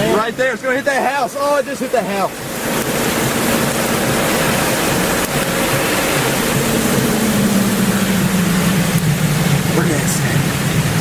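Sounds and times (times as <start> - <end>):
wind and road noise: 0.0 - 11.0
low engine drone: 2.3 - 11.0.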